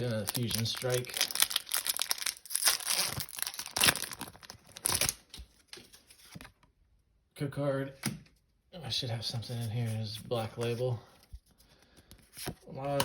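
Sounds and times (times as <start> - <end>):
foil wrapper crinkling and tearing: 0.0 - 5.5.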